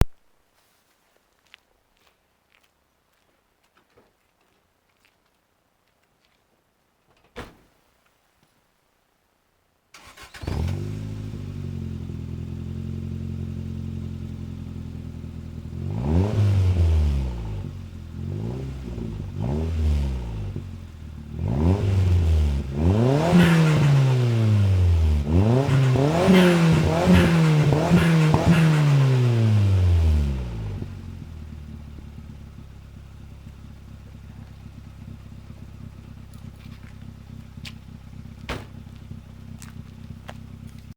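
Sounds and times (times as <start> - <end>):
car engine idling: 10.0 - 40.9
car engine revving: 10.0 - 40.9.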